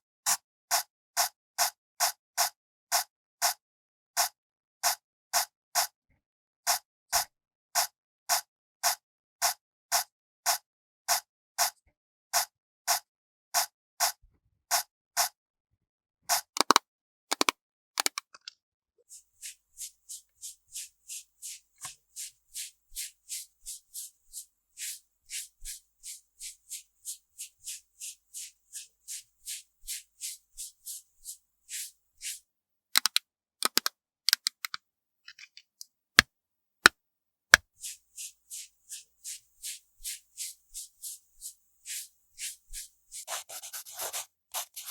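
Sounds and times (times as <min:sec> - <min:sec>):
brush rubbing strokes: 0:19.1 - 0:32.4, 0:37.7 - 0:44.9
sharp clicks: 0:33.0 - 0:34.8.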